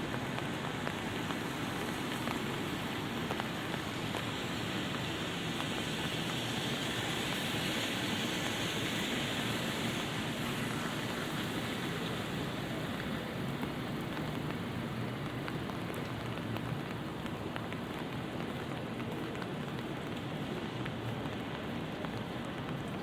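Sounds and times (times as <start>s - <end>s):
light rain on an umbrella: 0.0s - 23.0s
rain drops ticking: 0.0s - 23.0s.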